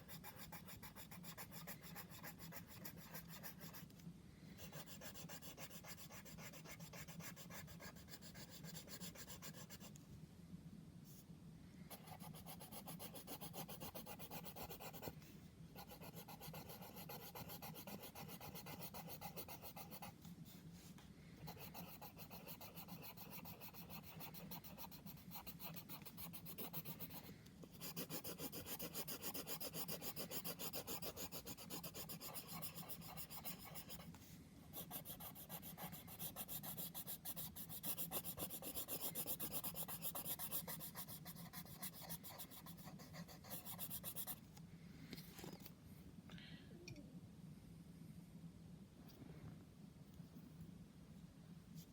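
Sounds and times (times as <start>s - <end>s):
drawing tool scratching on paper: 4.6s - 9.9s, 11.9s - 15.2s, 15.8s - 20.2s, 21.5s - 34.1s, 34.8s - 44.4s.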